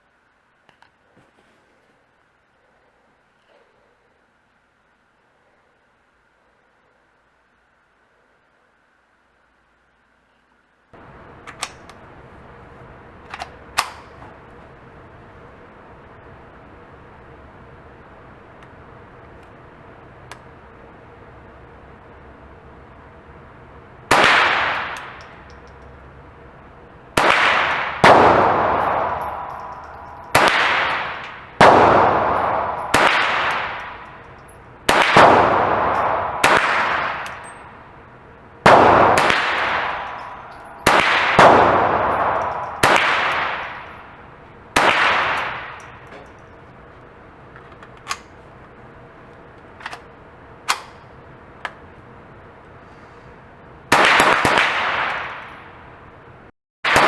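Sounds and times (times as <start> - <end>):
rifle shots echoing: 11.0 - 46.8, 53.9 - 56.0.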